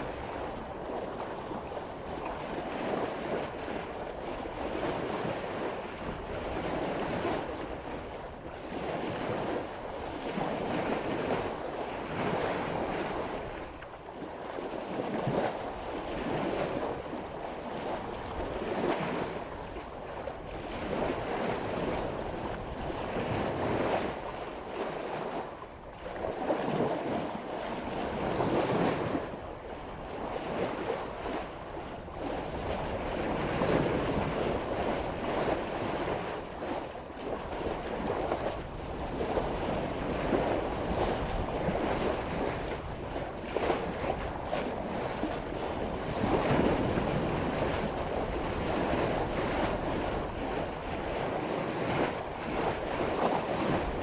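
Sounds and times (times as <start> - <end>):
water splashing along boat hull: 0.0 - 54.0
wind buffeting microphone: 0.0 - 54.0.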